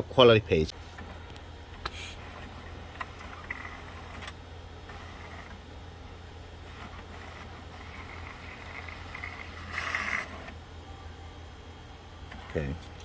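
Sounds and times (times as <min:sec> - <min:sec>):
printer mechanism humming: 0:00.0 - 0:13.0
faint printer clicks: 0:01.0 - 0:05.7, 0:06.6 - 0:10.6.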